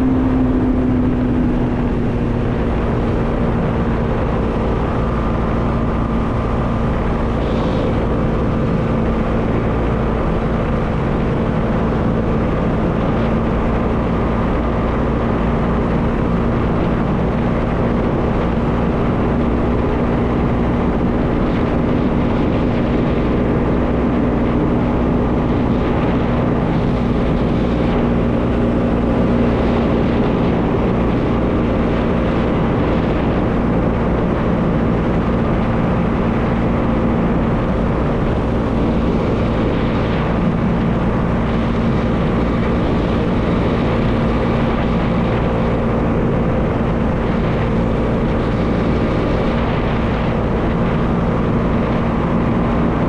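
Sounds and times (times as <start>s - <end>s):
motorcycle engine cruising: 0.0s - 53.0s
wind rushing over microphone: 0.0s - 53.0s.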